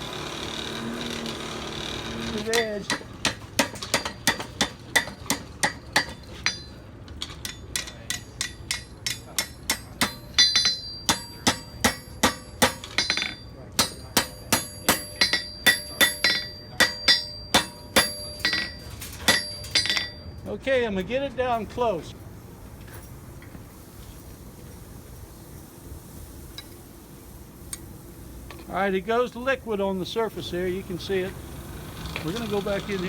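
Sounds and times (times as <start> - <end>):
hammer striking metal on anvil: 2.5 - 6.8, 7.4 - 20.3.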